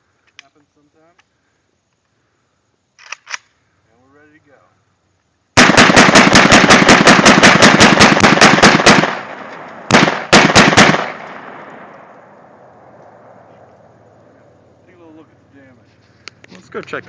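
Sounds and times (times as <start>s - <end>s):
rifle firing rapid shots: 5.6s - 11.9s
gunshot echo: 5.6s - 13.7s.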